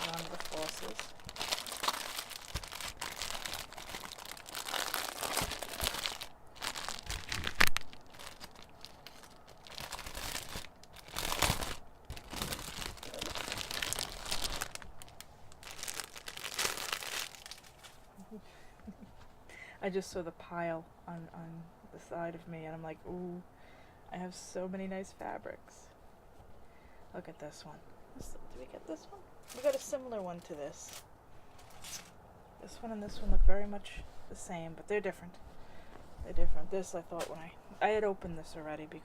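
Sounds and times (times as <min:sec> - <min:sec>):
plastic packaging crinkling: 0:00.0 - 0:18.1, 0:29.4 - 0:32.1.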